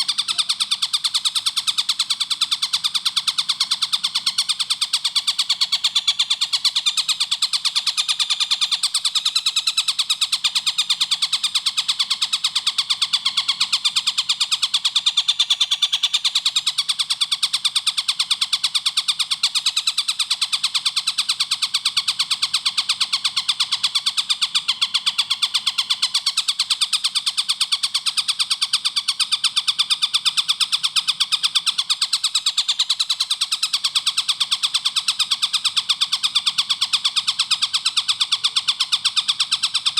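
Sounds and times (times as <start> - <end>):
kingfisher calling: 0.0 - 0.7.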